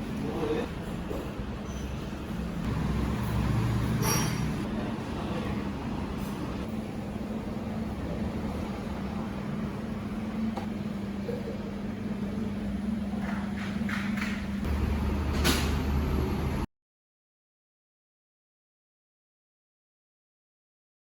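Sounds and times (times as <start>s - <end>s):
workshop hum: 0.0s - 16.7s.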